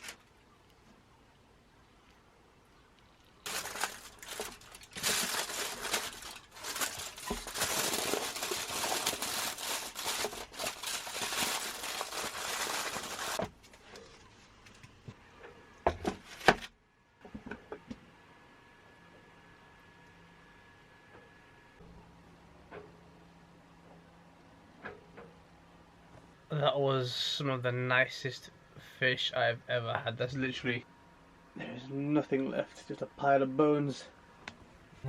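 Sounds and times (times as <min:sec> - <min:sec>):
wrapping crinkling and rustling: 0:00.0 - 0:00.4, 0:03.0 - 0:14.8.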